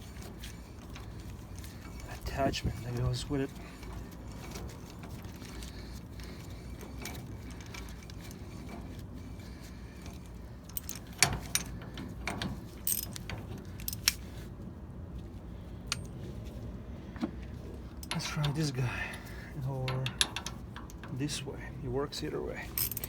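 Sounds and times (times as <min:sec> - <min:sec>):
low steady hum: 0:00.0 - 0:23.0
steel adapters clinking: 0:10.0 - 0:14.3, 0:19.7 - 0:21.4, 0:22.6 - 0:23.0.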